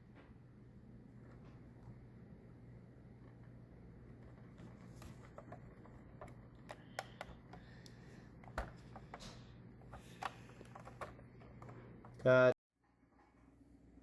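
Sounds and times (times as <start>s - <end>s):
steady low hum: 0.0s - 14.0s
faint clicks and taps: 3.2s - 12.3s.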